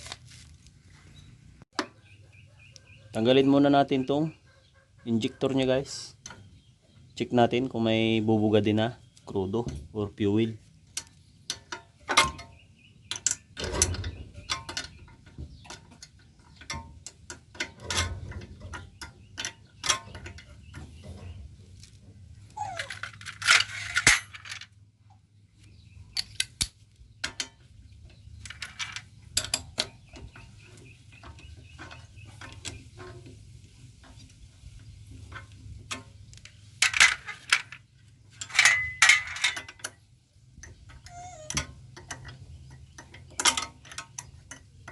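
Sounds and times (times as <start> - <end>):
metal tools clinking on engine: 11.0 - 21.1, 27.2 - 33.2, 36.8 - 44.9.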